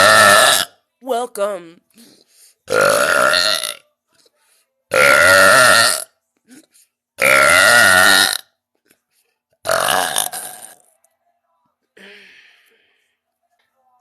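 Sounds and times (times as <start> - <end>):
woman belching: 0.0 - 0.8, 2.7 - 3.8, 4.9 - 6.1, 7.2 - 8.4, 9.7 - 10.8.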